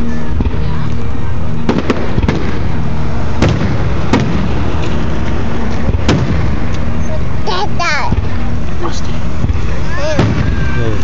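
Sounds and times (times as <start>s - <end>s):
rumble of fireworks detonations: 0.0s - 11.0s
sharp firework bangs: 0.3s - 6.9s, 9.4s - 11.0s.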